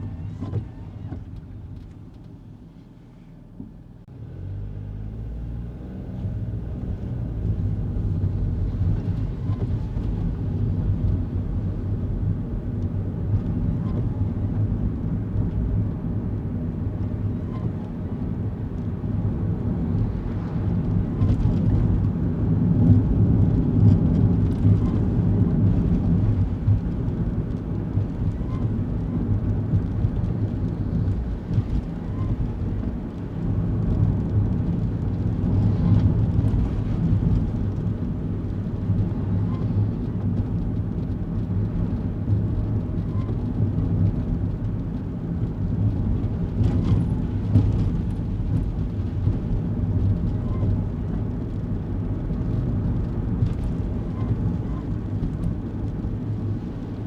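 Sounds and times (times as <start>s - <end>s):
road noise: 0.0s - 57.0s
car engine accelerating: 4.1s - 11.8s.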